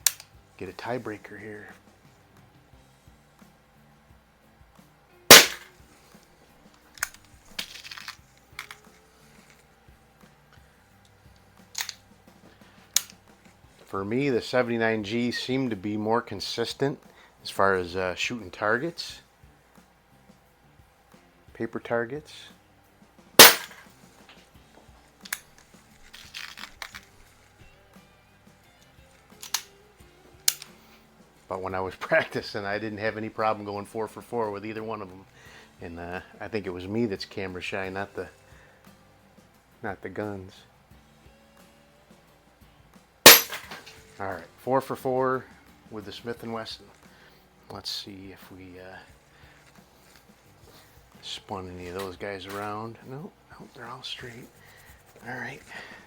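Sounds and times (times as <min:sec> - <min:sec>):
faint background music: 0:00.0 - 0:56.0
pellet pistol firing crack: 0:05.3 - 0:05.7, 0:23.4 - 0:23.9, 0:43.3 - 0:43.9
sharp click: 0:05.3 - 0:05.7, 0:23.4 - 0:23.8
short rustle: 0:54.1 - 0:56.0.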